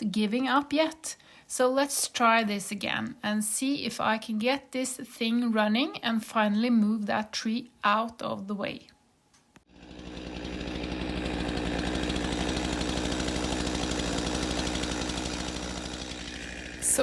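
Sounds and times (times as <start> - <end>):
chainsaw running: 9.7 - 17.0.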